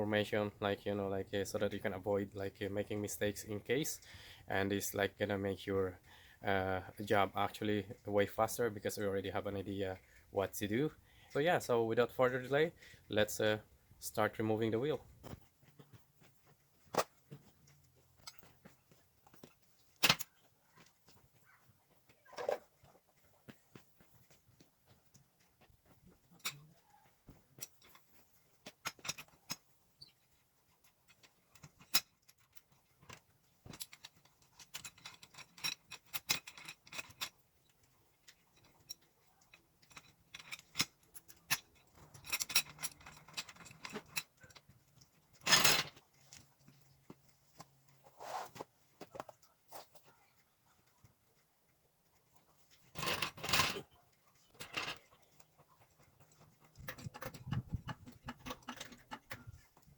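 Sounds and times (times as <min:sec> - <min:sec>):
metal tools clinking: 0:31.1 - 0:37.4, 0:38.3 - 0:46.1, 0:52.7 - 0:59.9.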